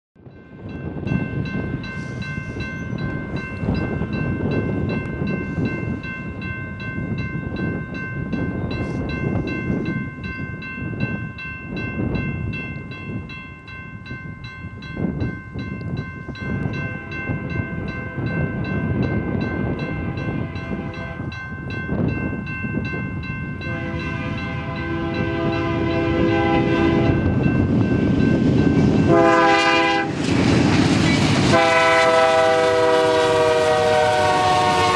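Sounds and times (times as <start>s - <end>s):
train rumbling: 0.2s - 34.9s
locomotive air horn: 20.0s - 21.3s, 23.6s - 27.3s, 29.1s - 30.2s, 31.5s - 34.9s.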